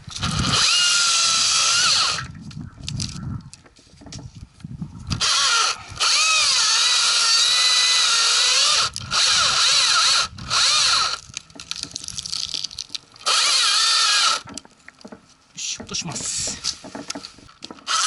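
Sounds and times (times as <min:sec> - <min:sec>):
electric chainsaw cutting wood: 0:00.1 - 0:02.3, 0:05.1 - 0:11.2, 0:13.2 - 0:14.5.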